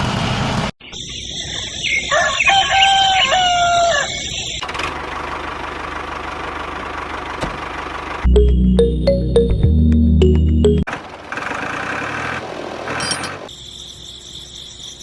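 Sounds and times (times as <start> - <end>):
rooster crowing: 1.9 - 4.3.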